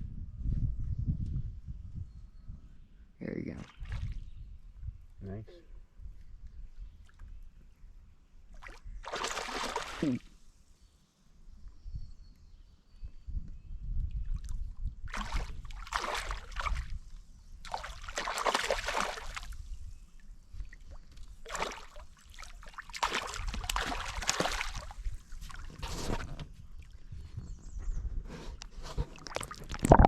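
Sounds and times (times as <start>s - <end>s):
water splashing and sloshing: 8.5s - 10.2s, 14.3s - 19.7s, 20.5s - 27.2s, 28.8s - 30.0s.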